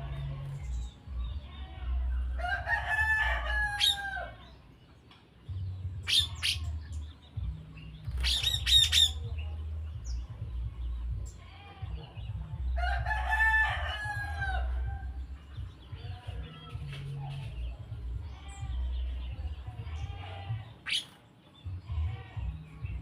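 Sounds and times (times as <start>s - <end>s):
bird calls: 3.8s - 9.3s, 15.4s - 23.0s.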